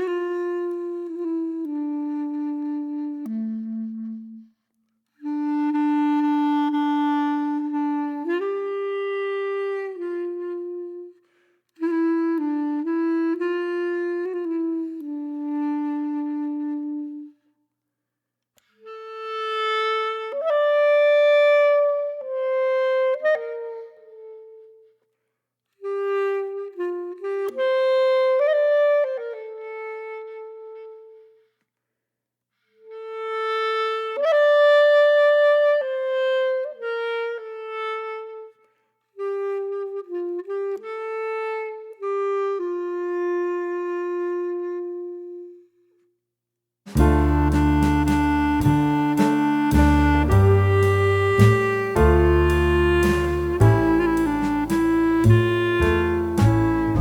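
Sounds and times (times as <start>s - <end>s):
solo wind instrument melody: 0.0s - 4.6s, 5.2s - 11.2s, 11.8s - 17.4s, 18.8s - 24.9s, 25.8s - 31.4s, 39.2s - 45.7s, 46.9s - 57.0s.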